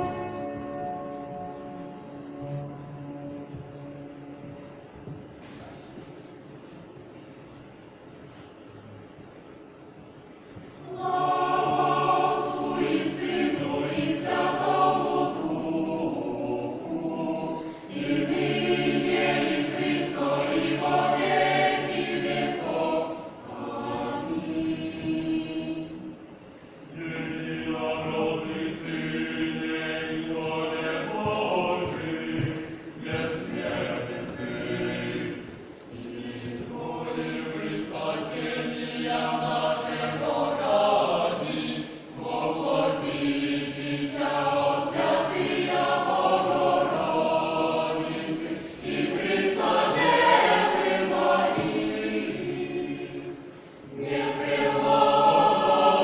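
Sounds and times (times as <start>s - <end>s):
choir singing: 0.0s - 5.1s, 10.7s - 56.0s.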